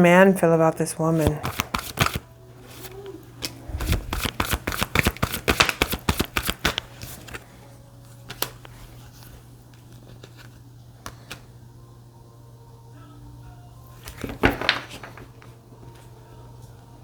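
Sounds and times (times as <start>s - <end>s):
cards being shuffled: 1.1s - 7.5s, 8.1s - 11.5s, 14.0s - 16.1s.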